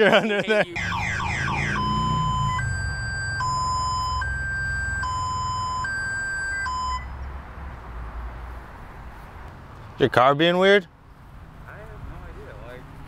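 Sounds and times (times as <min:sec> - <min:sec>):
two-tone car alarm from speaker: 0:00.8 - 0:07.2.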